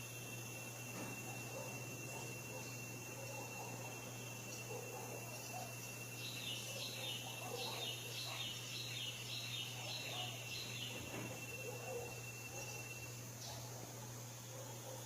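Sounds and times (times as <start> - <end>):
faint hum: 0.0 - 15.0
bird chirping: 5.4 - 13.7.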